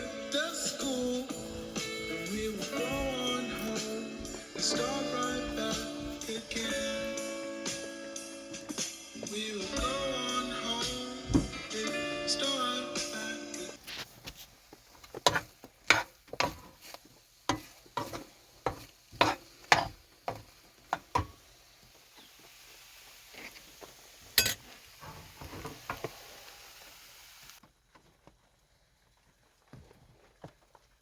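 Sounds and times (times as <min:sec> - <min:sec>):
utensil scraping a pan: 0:15.0 - 0:21.4.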